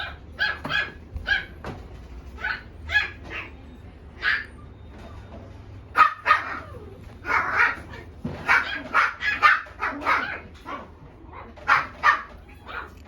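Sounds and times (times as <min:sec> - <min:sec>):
puppy barking: 0:00.0 - 0:01.7, 0:02.4 - 0:03.6, 0:04.2 - 0:04.6, 0:05.9 - 0:13.0.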